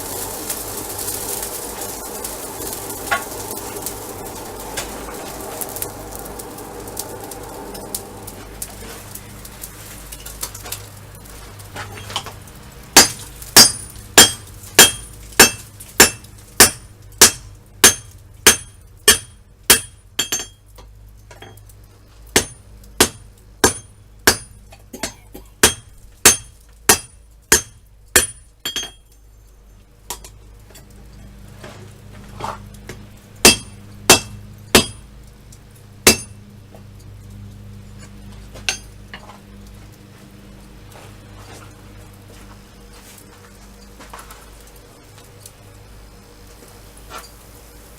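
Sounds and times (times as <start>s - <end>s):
steady low hum: 0.0s - 47.9s
hammer striking steel on anvil: 13.0s - 20.6s, 22.3s - 29.1s, 33.4s - 35.1s, 36.1s - 36.4s, 38.6s - 39.0s.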